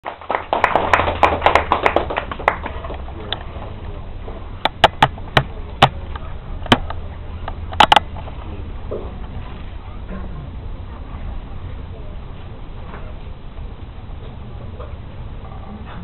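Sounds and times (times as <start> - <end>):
audience applause: 0.0 - 3.3
scattered taps and claps: 0.0 - 3.4, 4.6 - 6.0.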